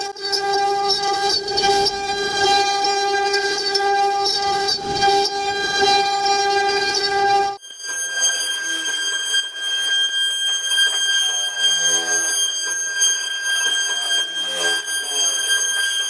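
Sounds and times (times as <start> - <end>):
router bit cutting wood: 0.0 - 7.6
router spindle high whine: 0.0 - 16.0.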